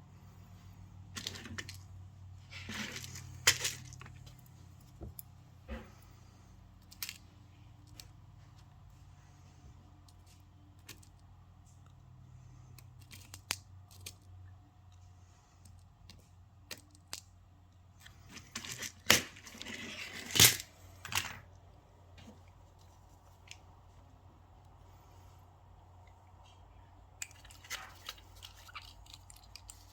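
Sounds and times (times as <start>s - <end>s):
rustling or scraping: 1.2s - 6.1s, 18.0s - 21.4s.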